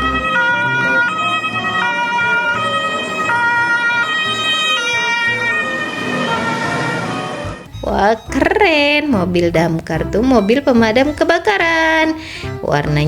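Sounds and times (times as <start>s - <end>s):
toy two-tone electronic siren: 0.0s - 9.0s.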